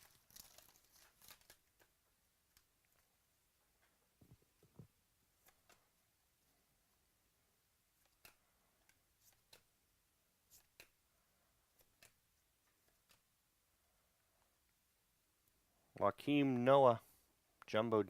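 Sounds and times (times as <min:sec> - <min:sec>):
trading cards clicking: 0:08.0 - 0:09.7, 0:10.5 - 0:11.0, 0:11.7 - 0:12.2, 0:12.8 - 0:13.3.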